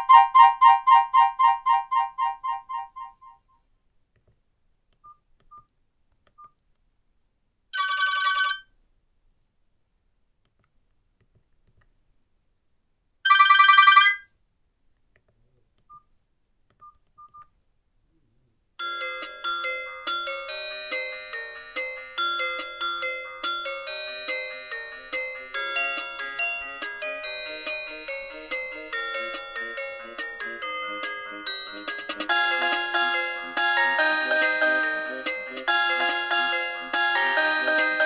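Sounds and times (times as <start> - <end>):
chiming ringtone melody: 0.0 - 3.4, 18.8 - 38.0
trilling electronic ringtone: 7.8 - 8.7, 13.3 - 14.3, 18.8 - 38.0.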